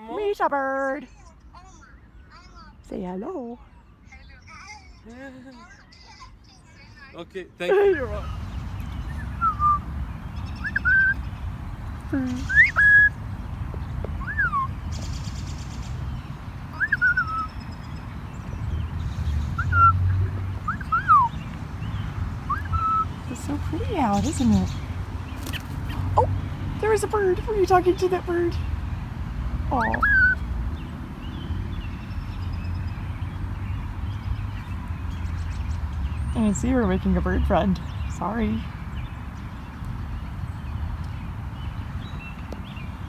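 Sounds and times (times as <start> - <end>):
small bird chirping: 8.1 - 28.8, 29.7 - 43.0
bird whistled calls: 8.5 - 11.3, 12.2 - 13.2, 14.2 - 15.8, 16.7 - 17.8, 19.4 - 21.4, 22.4 - 23.2, 29.8 - 30.4.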